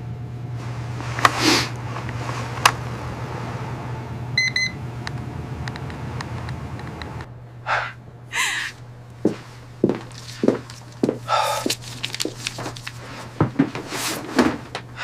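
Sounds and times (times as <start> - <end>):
low electrical hum: 0.0 - 15.0
medical device beeps: 4.4 - 4.8.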